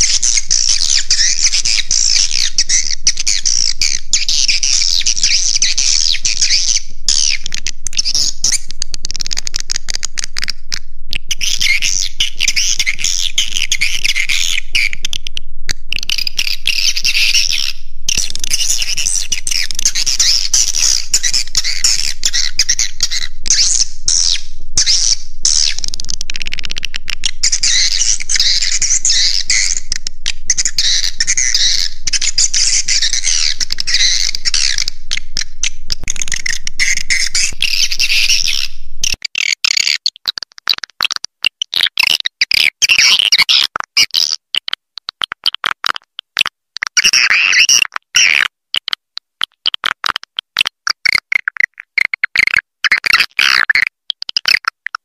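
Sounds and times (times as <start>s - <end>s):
low hum: 5.8s - 7.1s, 7.7s - 11.4s, 14.6s - 39.2s
swiftlets twittering: 15.9s - 39.2s.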